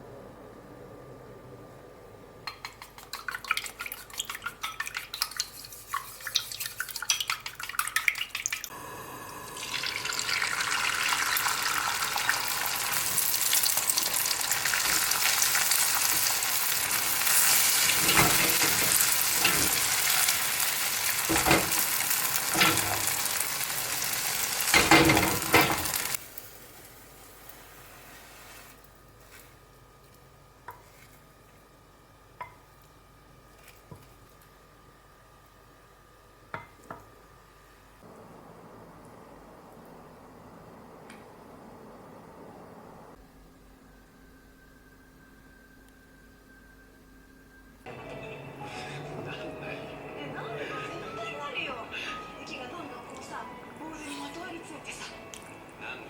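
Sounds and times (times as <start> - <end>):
light clicks and taps of stirring: 2.4 - 6.0
food sizzling in a pan: 8.7 - 29.5.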